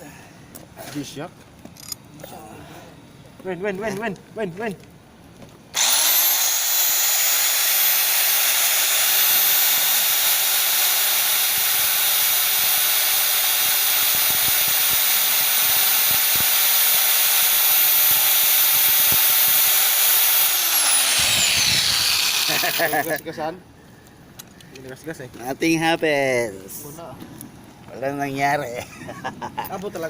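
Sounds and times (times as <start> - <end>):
drill motor winding down: 5.8 - 23.2
rotary hammer drill whirring: 5.8 - 23.2.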